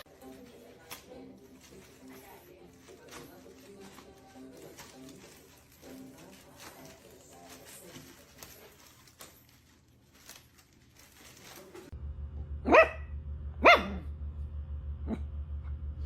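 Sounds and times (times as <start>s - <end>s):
low pulsing hum: 11.9s - 16.0s
dog barking: 12.6s - 14.1s.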